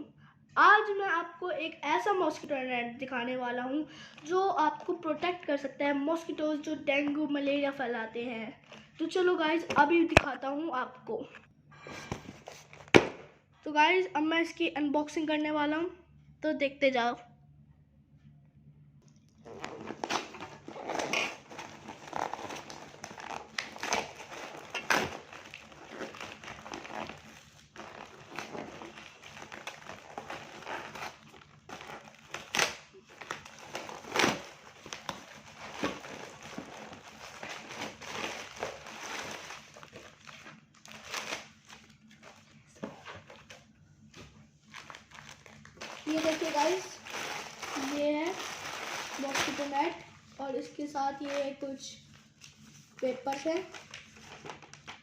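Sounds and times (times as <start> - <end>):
packaging rustling and crinkling: 19.4 - 43.6, 44.2 - 50.4, 52.1 - 55.0.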